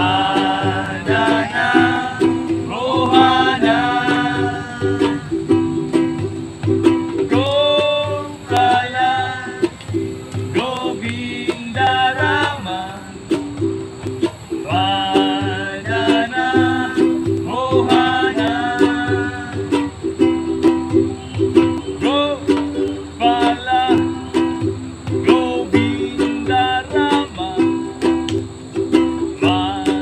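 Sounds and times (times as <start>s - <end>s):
steady low beat: 0.0s - 23.2s
voices chanting: 0.0s - 30.0s.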